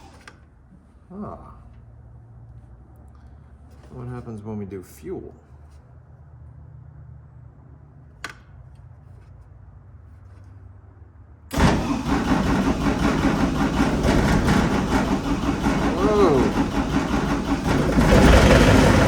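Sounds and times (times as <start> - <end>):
diesel engine starting and running: 11.5 - 19.0.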